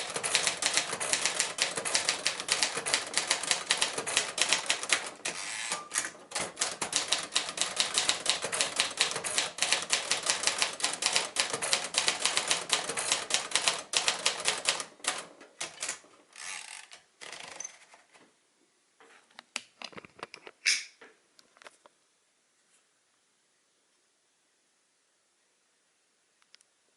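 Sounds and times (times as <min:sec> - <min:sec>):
manual typewriter typing: 0:00.0 - 0:17.8.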